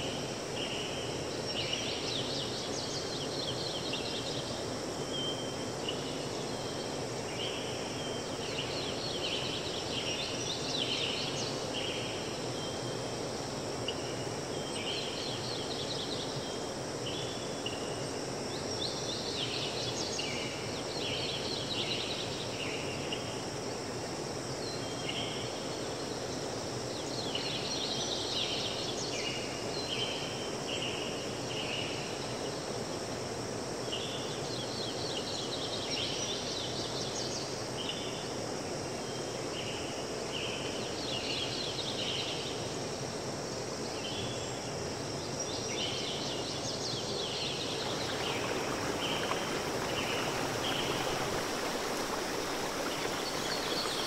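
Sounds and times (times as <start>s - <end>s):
running water: 47.0s - 54.0s.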